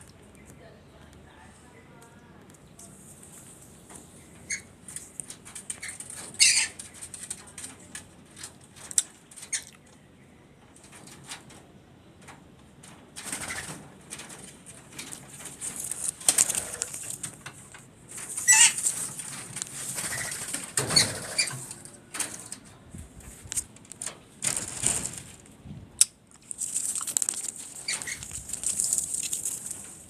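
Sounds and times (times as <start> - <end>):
parrots harsh screeches: 5.8 - 6.8, 18.4 - 18.9, 20.0 - 21.6.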